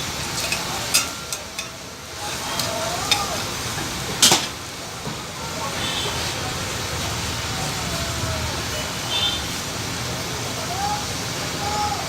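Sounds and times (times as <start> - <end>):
dosa sizzling on a griddle: 0.0 - 12.0
metal spatula clicks and scrapes: 0.3 - 3.3.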